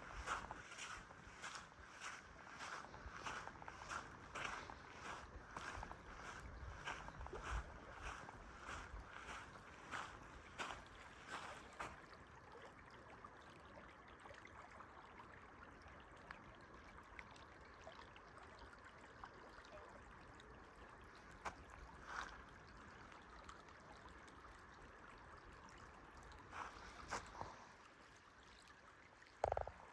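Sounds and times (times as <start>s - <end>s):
faint outdoor hiss: 0.0s - 12.6s.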